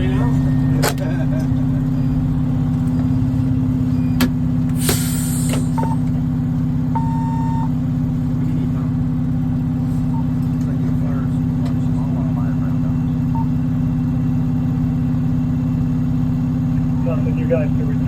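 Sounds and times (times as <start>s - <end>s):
diesel engine droning: 0.0s - 18.0s
hiss of air: 4.8s - 5.7s
short electronic beep: 7.0s - 7.7s.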